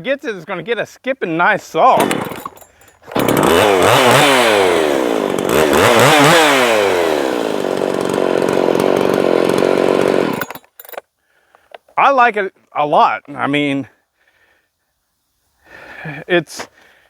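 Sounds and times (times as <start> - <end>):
chainsaw revving and running: 1.9 - 10.9.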